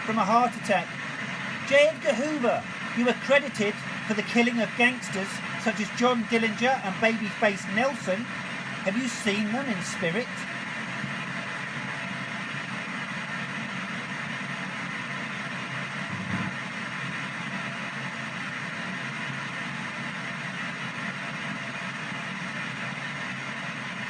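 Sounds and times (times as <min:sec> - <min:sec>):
radio static chopped rapidly: 0:16.1 - 0:16.6.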